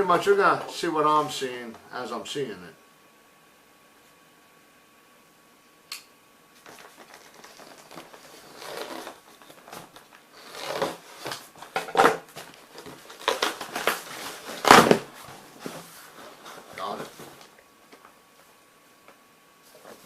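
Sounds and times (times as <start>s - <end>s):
sharp click: 5.9s - 6.1s
packaging rustling and tearing: 6.6s - 15.4s.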